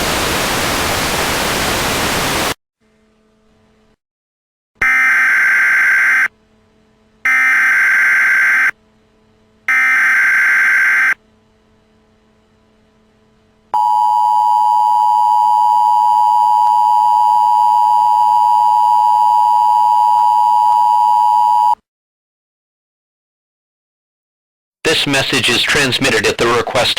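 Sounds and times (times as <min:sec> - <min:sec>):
two-tone attention signal: 0:13.8 - 0:21.8.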